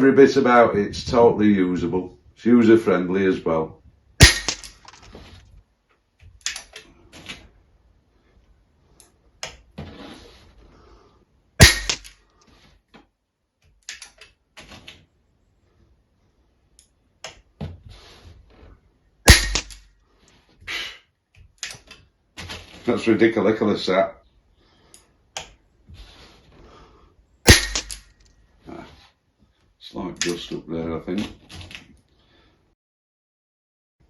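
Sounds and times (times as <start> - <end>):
air rifle shot crack: 4.2 - 4.7, 11.6 - 12.1, 19.3 - 19.8, 27.5 - 28.0.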